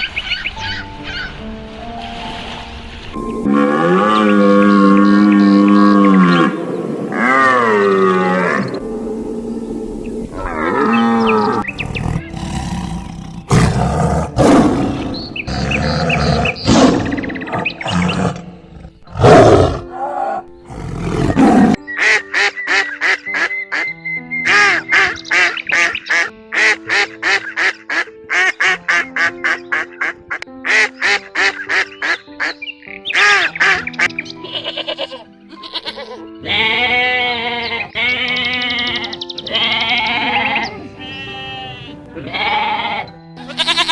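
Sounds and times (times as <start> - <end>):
background music: 0.0 - 43.9
loud animal calls: 3.2 - 32.5, 33.1 - 43.9
duck quacks: 24.5 - 32.5, 33.2 - 43.9.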